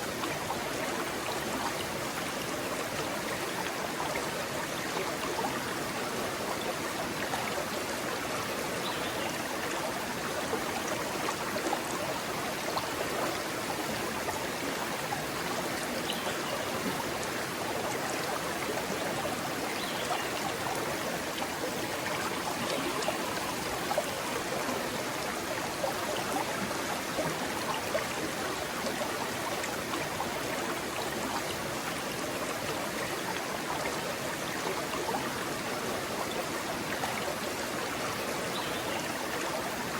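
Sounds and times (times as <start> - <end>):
stream rushing over stones: 0.0 - 39.9.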